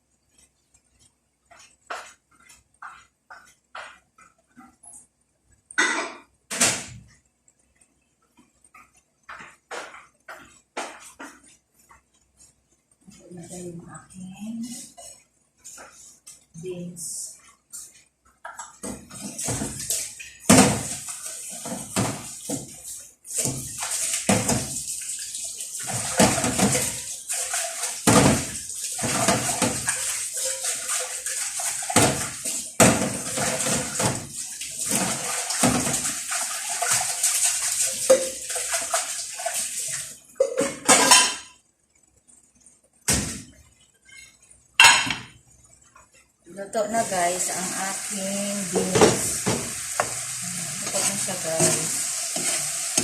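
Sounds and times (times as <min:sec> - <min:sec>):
pot of beans hissing: 0:47.3 - 0:53.0.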